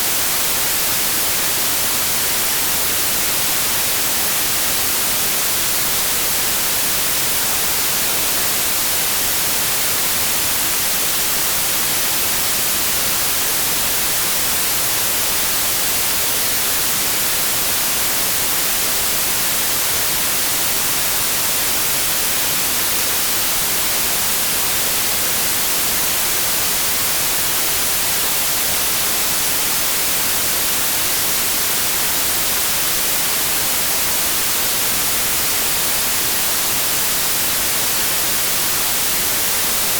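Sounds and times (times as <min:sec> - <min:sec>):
white noise hiss: 0:00.0 - 0:39.9.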